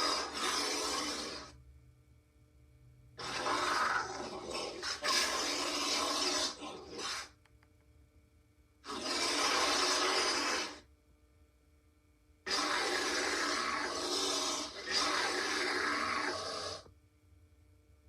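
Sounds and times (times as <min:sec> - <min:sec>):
harsh creature noise bursts: 0:00.0 - 0:01.5, 0:03.2 - 0:07.3, 0:08.8 - 0:10.8, 0:12.5 - 0:16.8.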